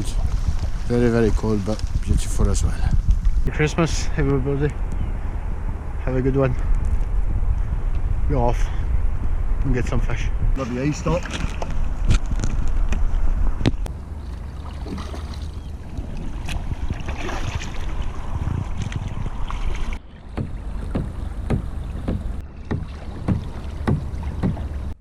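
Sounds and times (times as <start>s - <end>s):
wind rumbling on microphone: 0.0s - 25.0s
kayak paddle splashing water: 14.0s - 25.0s.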